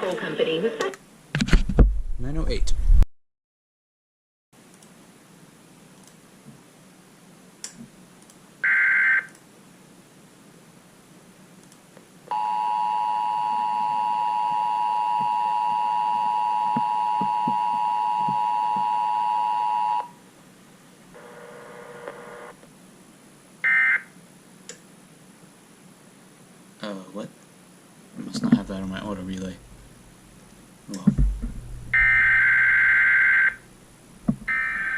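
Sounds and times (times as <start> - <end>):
data burst screech: 31.9 - 33.6.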